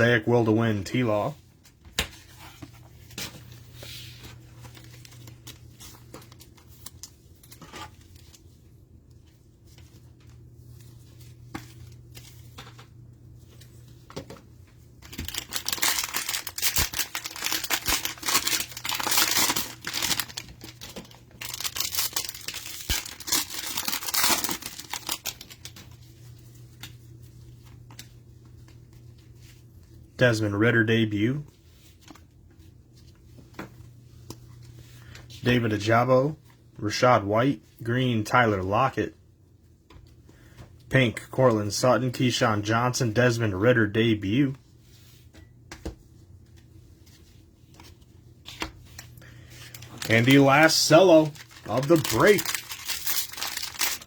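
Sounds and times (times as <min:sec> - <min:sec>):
cards rustling and clicking: 0:01.6 - 0:29.6, 0:45.7 - 0:54.0
plastic wrapper crinkling: 0:15.0 - 0:25.9, 0:47.8 - 0:54.0.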